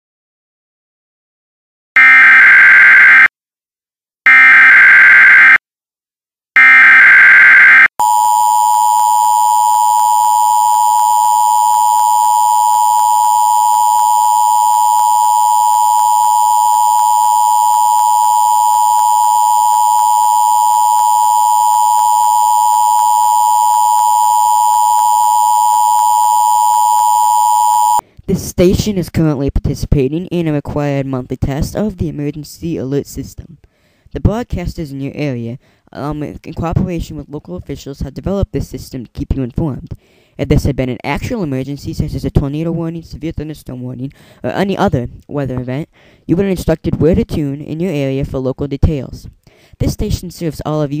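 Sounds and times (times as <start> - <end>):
screeching digital header tones: 2.0 - 3.3, 4.3 - 5.6, 6.6 - 28.0
two-tone attention signal: 2.0 - 3.3, 4.3 - 5.6, 6.6 - 28.0.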